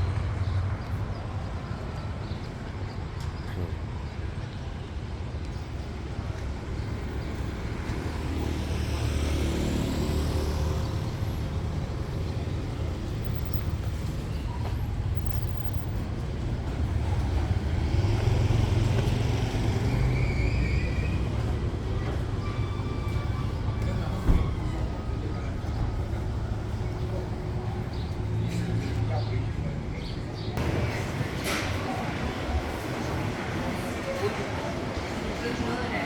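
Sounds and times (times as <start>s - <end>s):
low engine rumble: 9.9s - 35.4s.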